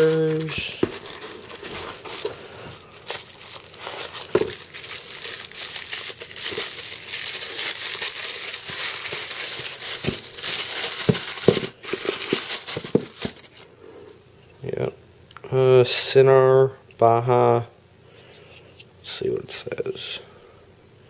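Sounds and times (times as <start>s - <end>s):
packing material crinkling: 0.0s - 13.6s.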